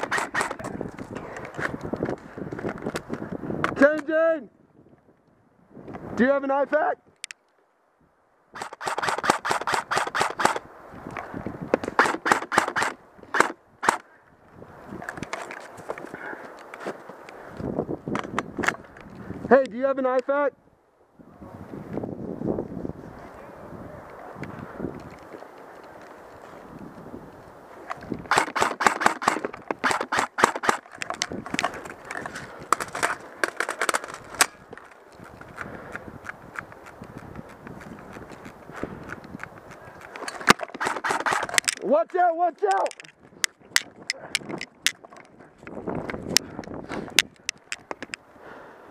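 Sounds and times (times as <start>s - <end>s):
airsoft guns firing: 0.0s - 0.7s, 8.6s - 10.6s, 12.0s - 14.0s, 28.3s - 30.9s, 40.5s - 41.7s.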